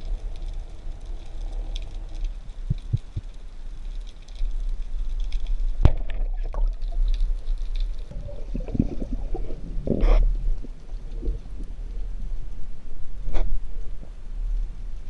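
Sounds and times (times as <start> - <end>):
faint crackling ticks: 0.0 - 15.0
underwater rumble: 0.0 - 15.0.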